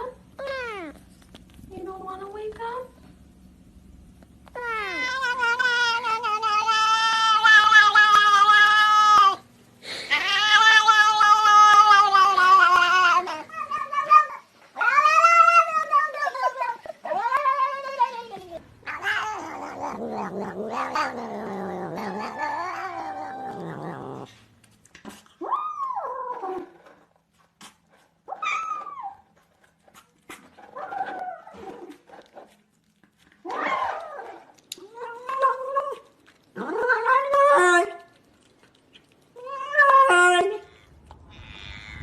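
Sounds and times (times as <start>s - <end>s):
cats yowling: 4.5s - 9.4s, 10.1s - 24.3s, 28.3s - 29.4s, 33.5s - 38.2s, 39.4s - 42.0s.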